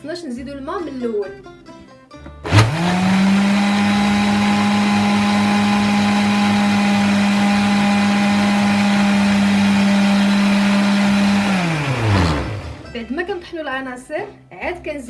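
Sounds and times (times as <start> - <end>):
electric blender running: 2.4 - 13.0.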